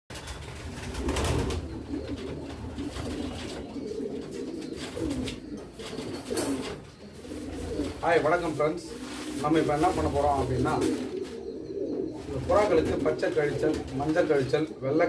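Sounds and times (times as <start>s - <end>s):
pigeons cooing: 0.2s - 15.0s.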